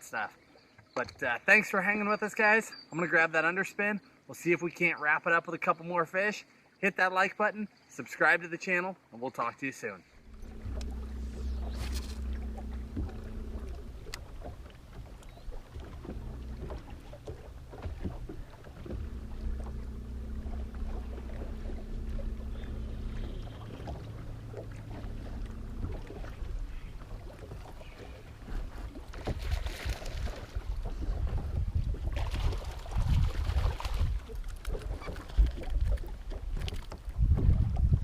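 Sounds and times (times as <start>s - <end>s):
electric motor humming: 10.2s - 29.2s
faint motor whine: 10.2s - 31.2s.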